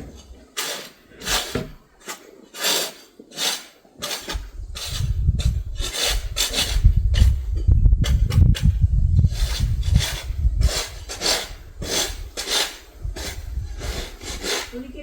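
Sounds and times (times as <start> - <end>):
snow shovel scraping pavement: 0.0 - 7.4, 9.3 - 15.0
low rumble: 6.8 - 12.4.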